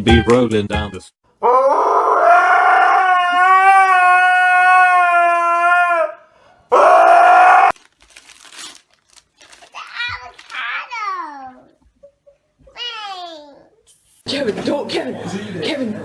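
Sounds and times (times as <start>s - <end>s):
voice wailing: 1.4s - 7.7s.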